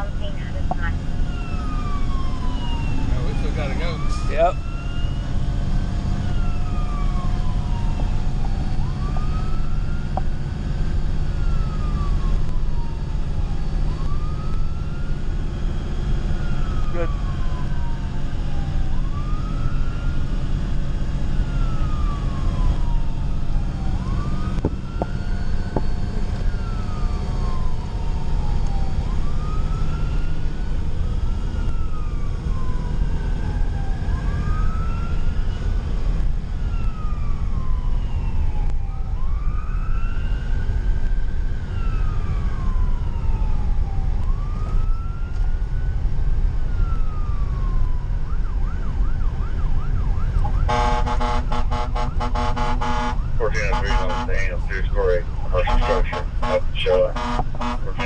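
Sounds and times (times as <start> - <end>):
engine and road rumble: 0.0 - 58.0
fire engine siren wailing: 0.0 - 58.0.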